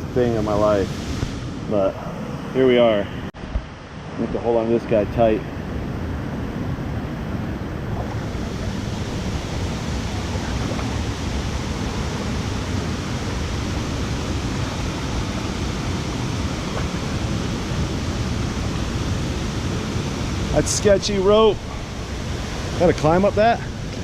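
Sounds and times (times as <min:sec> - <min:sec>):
waterfall rushing: 0:04.8 - 0:24.0.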